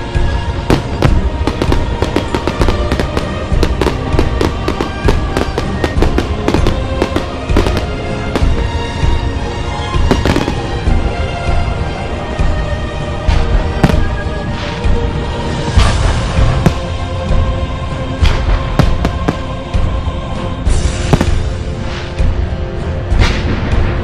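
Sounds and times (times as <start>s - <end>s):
music playing: 0.0s - 24.0s
fireworks bangs and cracks: 0.6s - 9.2s, 10.0s - 11.0s, 13.3s - 14.8s, 15.7s - 17.1s, 18.2s - 19.6s, 20.7s - 21.6s.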